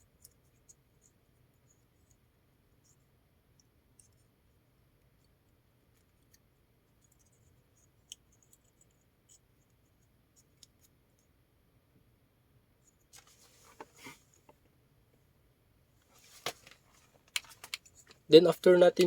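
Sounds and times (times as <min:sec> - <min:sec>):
cable wires clicking and scratching: 0:16.3 - 0:19.0.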